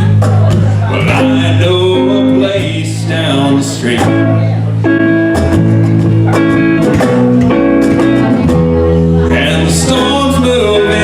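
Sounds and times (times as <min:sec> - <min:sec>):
acoustic guitar strumming: 0:00.0 - 0:11.0.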